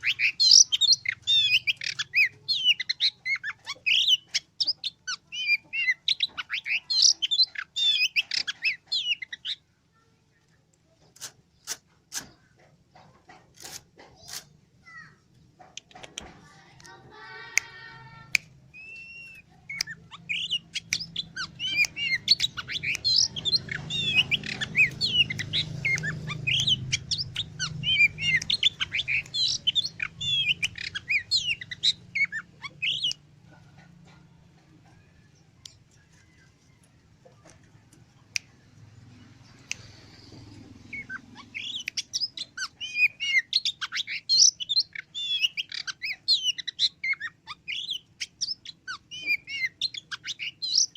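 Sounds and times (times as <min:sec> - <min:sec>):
bird singing chirps and whistles: 0:00.0 - 0:09.5, 0:18.7 - 0:33.2, 0:41.0 - 0:50.9.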